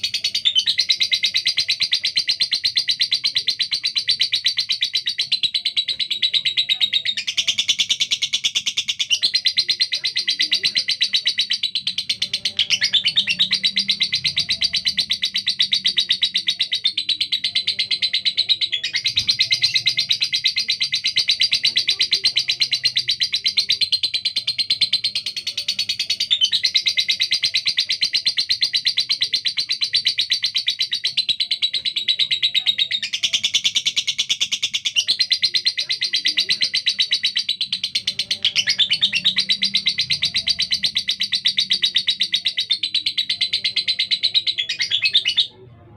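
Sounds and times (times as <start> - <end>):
lovebird chattering: 0.0 - 45.7.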